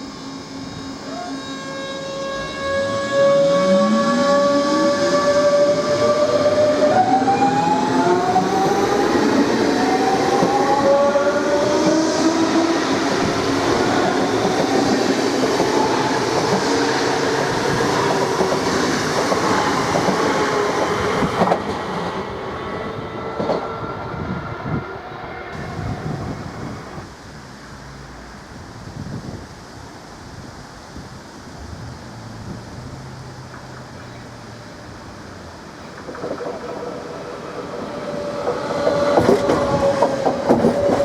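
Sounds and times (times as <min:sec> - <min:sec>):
electric train motor whine: 0:00.0 - 0:27.1
train running noise: 0:00.0 - 0:41.0.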